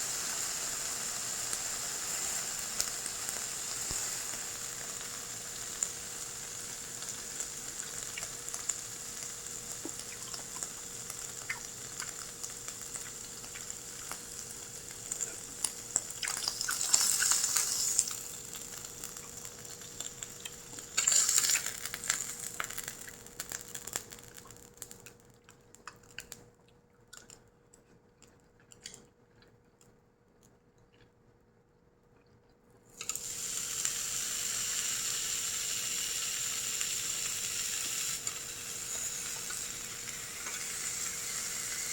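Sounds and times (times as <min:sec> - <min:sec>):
beef sizzling on hot plate: 0:00.0 - 0:25.1, 0:33.0 - 0:41.9
fat crackling and popping: 0:05.6 - 0:26.4.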